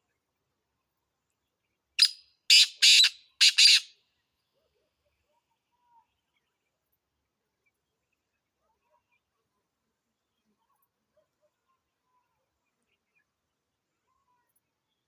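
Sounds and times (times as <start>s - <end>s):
bird harsh grating call: 2.0s - 3.9s.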